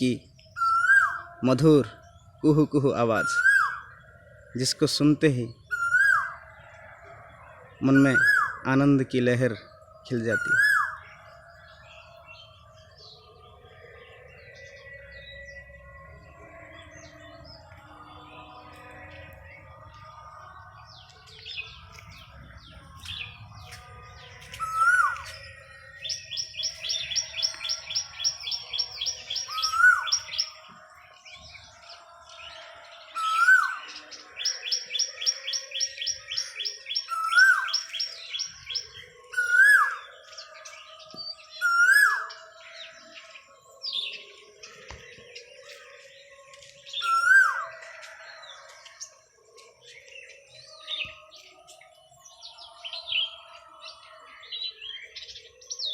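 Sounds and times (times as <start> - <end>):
bird high chirps: 20.9 - 30.8.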